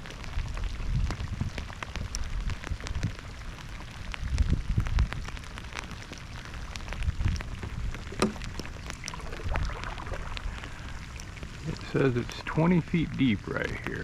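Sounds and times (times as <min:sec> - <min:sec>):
rain drops pattering: 0:00.0 - 0:14.0
low rumble: 0:06.8 - 0:14.0
low thumps: 0:07.7 - 0:08.7.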